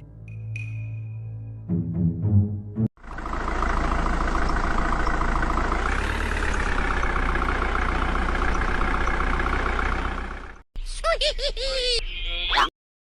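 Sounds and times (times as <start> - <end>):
tractor engine idling: 3.0 - 10.6.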